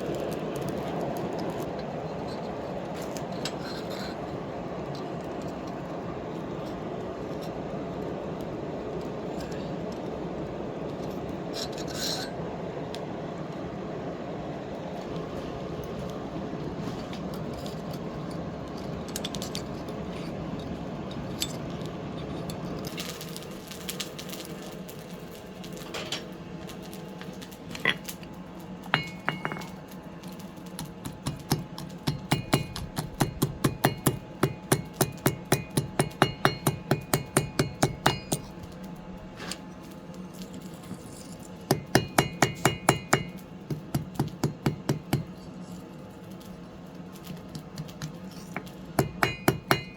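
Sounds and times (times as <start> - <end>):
steady hum: 24.5 - 49.9
hammer striking steel on anvil: 28.9 - 29.8, 31.0 - 38.7, 41.7 - 45.4, 48.6 - 49.9.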